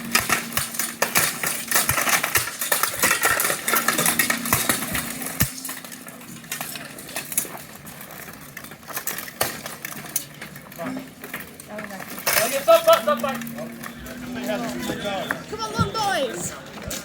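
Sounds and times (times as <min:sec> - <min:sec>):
steel weapons clashing on armour: 0:00.0 - 0:13.9.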